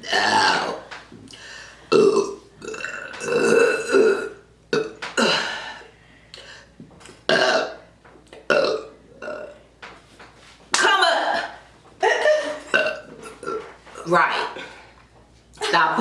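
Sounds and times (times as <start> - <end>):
person burping loudly: 0.0 - 0.9, 1.9 - 5.8, 7.3 - 7.8, 8.5 - 9.6, 10.9 - 13.7.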